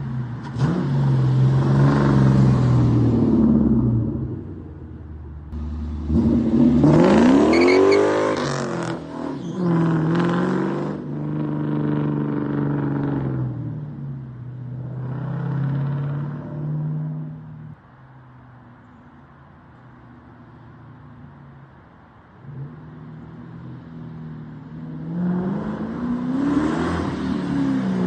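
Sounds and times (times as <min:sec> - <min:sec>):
v eight engine revving: 0:05.5 - 0:13.5.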